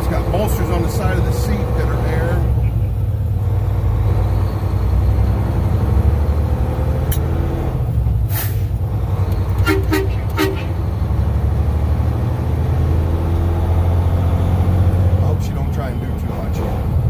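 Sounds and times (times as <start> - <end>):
truck engine droning: 0.0 - 17.0
brief hiss: 8.3 - 8.7
truck horn toots: 9.6 - 10.8.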